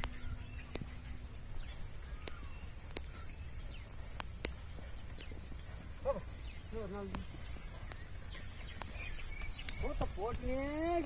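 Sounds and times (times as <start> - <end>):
short insect chirps: 0.0 - 10.6
sharp clicks: 2.2 - 3.1, 4.1 - 4.6, 8.7 - 10.6.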